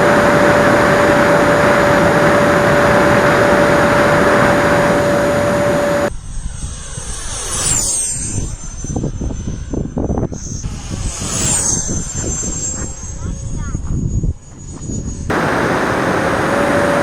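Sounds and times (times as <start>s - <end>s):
jet whine flying past: 0.0s - 9.6s, 14.4s - 17.0s
model jet engine rushing: 0.0s - 17.0s.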